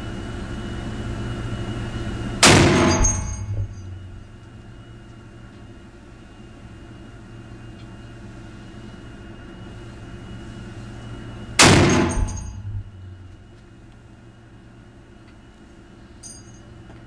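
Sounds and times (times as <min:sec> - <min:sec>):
rifle shot: 0:02.4 - 0:03.4, 0:11.6 - 0:12.4.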